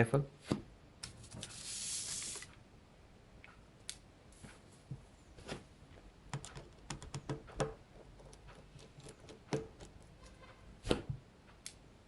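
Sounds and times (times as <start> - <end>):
screwdriver clicks and taps: 6.4 - 10.0.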